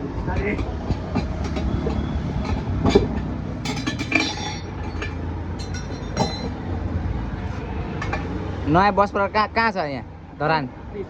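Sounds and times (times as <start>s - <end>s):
metal tools clanking on a wheel rim: 0.2s - 6.8s, 7.9s - 8.3s.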